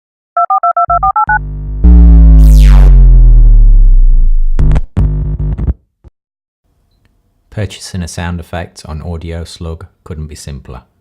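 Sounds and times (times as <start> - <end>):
low synth chord with falling sweep: 1.4 - 4.5.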